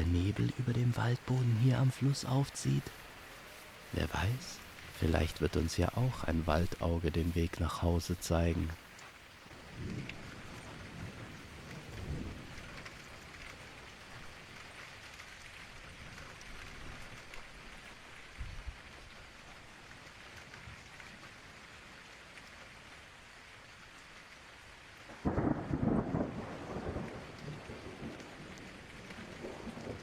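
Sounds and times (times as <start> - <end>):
steady rain: 0.0 - 30.0
low thunder rumble: 25.2 - 28.5.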